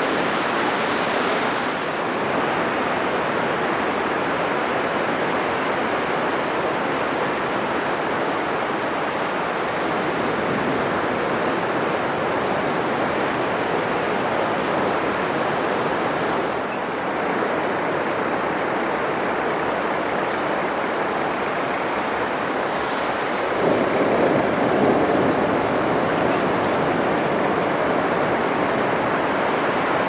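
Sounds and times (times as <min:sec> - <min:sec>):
surf breaking on beach: 0:00.0 - 0:02.8, 0:09.3 - 0:30.0.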